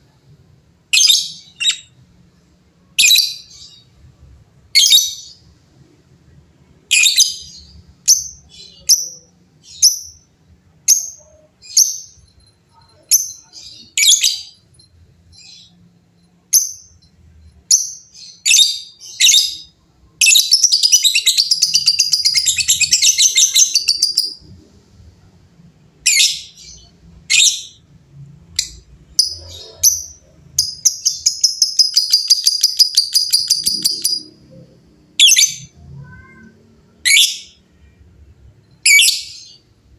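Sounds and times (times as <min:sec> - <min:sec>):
lovebird chirps and trills: 0:06.9 - 0:24.6, 0:28.6 - 0:37.6, 0:38.8 - 0:39.6.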